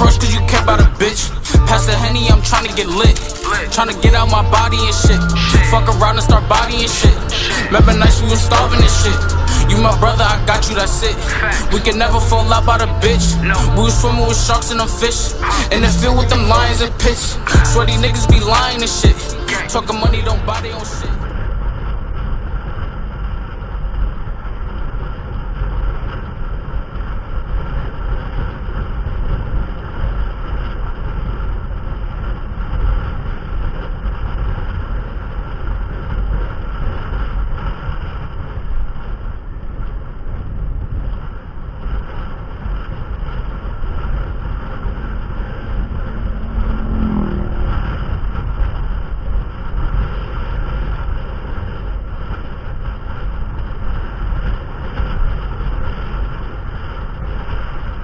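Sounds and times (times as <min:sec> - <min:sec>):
wind on microphone: 0:00.0 - 0:58.0
motorcycle engine: 0:44.6 - 0:48.6
brief higher tone: 0:45.6 - 0:47.8.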